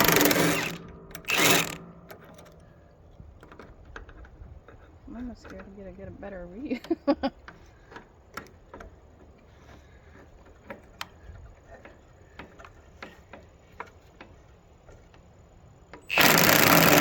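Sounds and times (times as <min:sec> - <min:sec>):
power tool driving a bolt: 0:00.0 - 0:02.8, 0:16.0 - 0:17.0.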